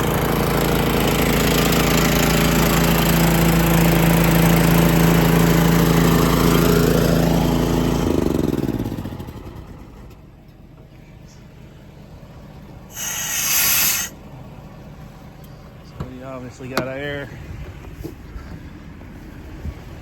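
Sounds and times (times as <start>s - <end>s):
air compressor running: 12.9s - 14.2s.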